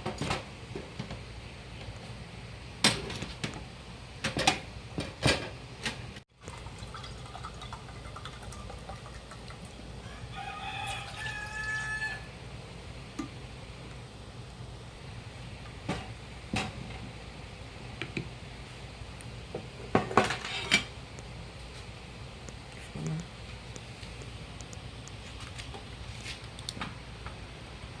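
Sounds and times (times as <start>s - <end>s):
rooster crowing: 10.0s - 12.4s.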